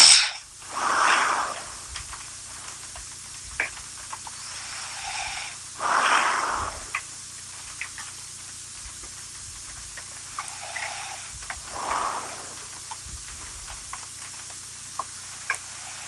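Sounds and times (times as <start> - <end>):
soft breathing: 4.8 - 7.0, 10.5 - 13.0.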